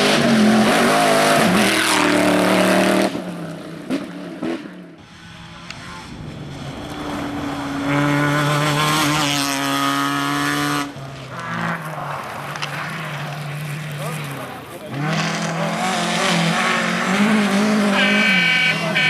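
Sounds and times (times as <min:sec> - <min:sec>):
rally car engine revving: 0:00.0 - 0:19.0.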